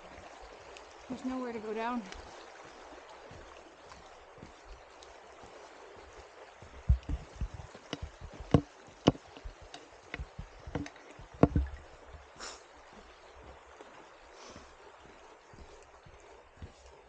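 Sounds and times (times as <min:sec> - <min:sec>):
footsteps on rock: 0:06.6 - 0:12.3
trekking poles clicking on rock: 0:06.8 - 0:12.2.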